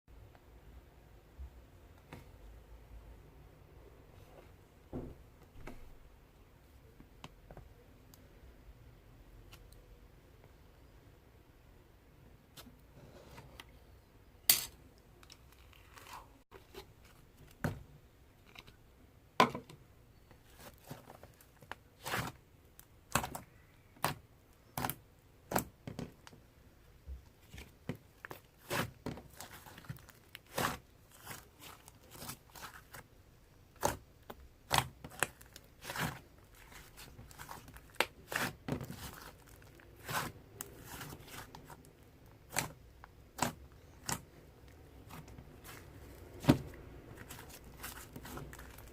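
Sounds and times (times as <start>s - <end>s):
hands squishing slime: 20.4s - 25.8s, 27.3s - 33.1s, 33.7s - 48.9s.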